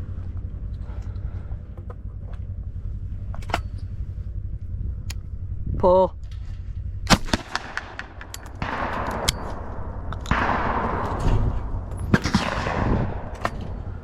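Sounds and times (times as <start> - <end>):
faint cracks and clicks: 6.2 - 14.0
shotgun reports: 7.1 - 14.0.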